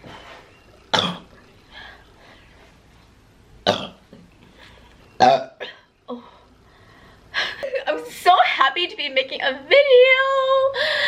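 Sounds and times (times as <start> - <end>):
woman burping: 0.9 - 1.4, 3.6 - 4.1, 5.2 - 6.2.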